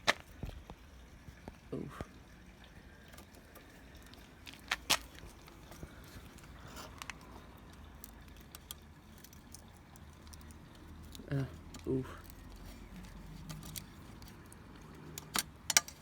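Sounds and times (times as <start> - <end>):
tools and parts clicking: 6.4 - 16.0.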